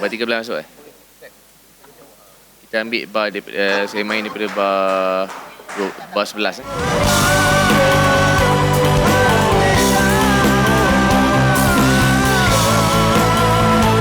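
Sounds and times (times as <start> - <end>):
live rock band playing: 6.7 - 14.0.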